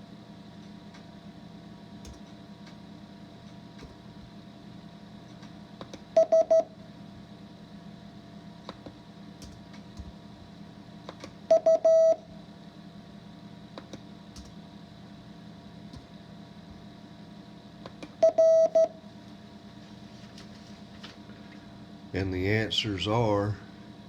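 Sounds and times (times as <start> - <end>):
morse code beeps: 6.2 - 6.7, 11.5 - 12.2, 18.2 - 18.9.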